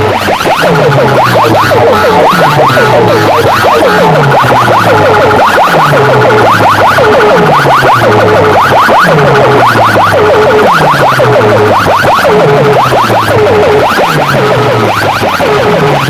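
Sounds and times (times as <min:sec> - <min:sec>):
pulsing low bass line: 0:00.0 - 0:16.0
siren-like electronic whoops: 0:00.0 - 0:16.0.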